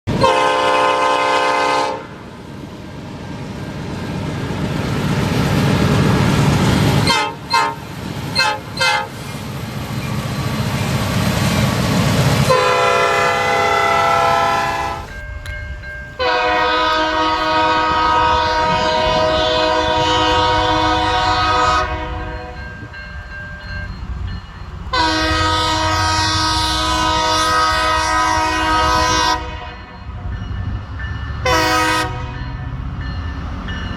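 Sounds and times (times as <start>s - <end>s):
locomotive air horn blasts: 0.1s - 2.2s, 7.0s - 7.8s, 8.4s - 9.2s, 12.4s - 15.1s, 16.2s - 22.6s, 24.9s - 29.9s, 31.4s - 32.5s
diesel locomotive engine rumble: 0.1s - 33.9s.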